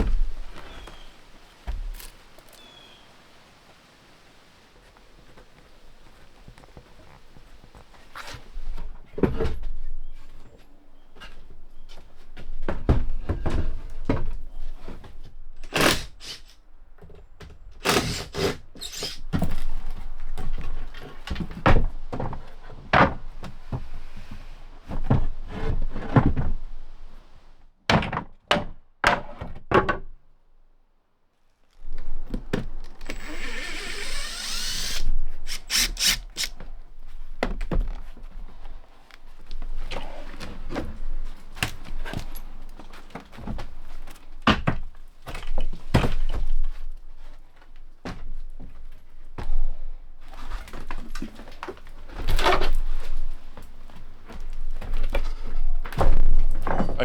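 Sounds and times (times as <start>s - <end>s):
power drill running: 32.9s - 36.5s.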